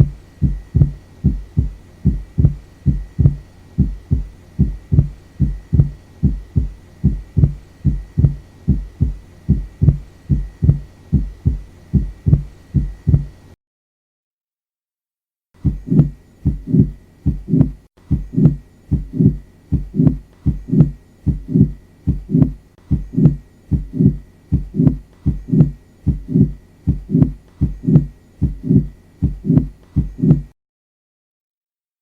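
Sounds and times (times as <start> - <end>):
heartbeat: 0.0 - 13.4, 15.6 - 30.6.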